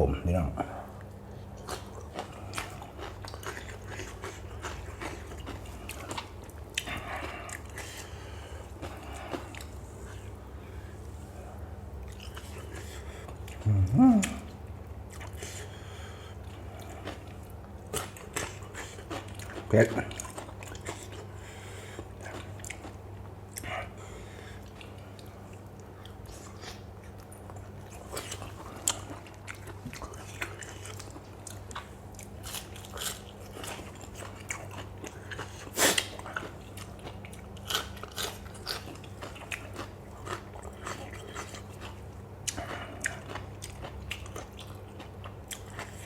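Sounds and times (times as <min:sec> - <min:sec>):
low steady hum: 0:00.0 - 0:46.0
person crunching food: 0:01.6 - 0:10.4, 0:24.6 - 0:46.0.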